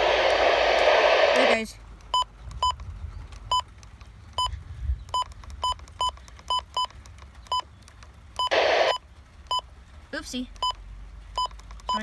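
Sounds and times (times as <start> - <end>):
burst of static hiss: 0.0 - 1.6, 8.5 - 9.0.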